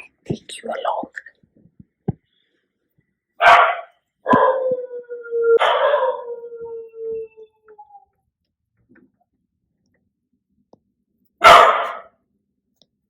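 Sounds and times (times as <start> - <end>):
puppy barking: 3.4 - 4.7, 5.6 - 6.3, 11.4 - 12.2
puppy howling: 4.3 - 8.2.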